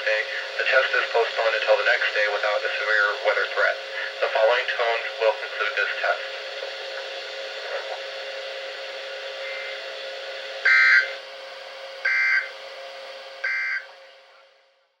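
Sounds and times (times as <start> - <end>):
radio hiss: 0.0 - 11.3
faint hum: 0.0 - 15.0
data tone bursts: 12.1 - 12.5, 13.4 - 13.9.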